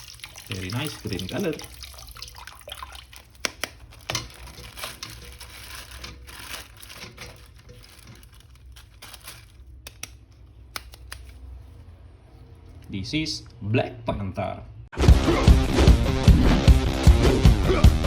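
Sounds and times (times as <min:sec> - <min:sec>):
plastic wrapping crinkling: 0:00.1 - 0:11.4.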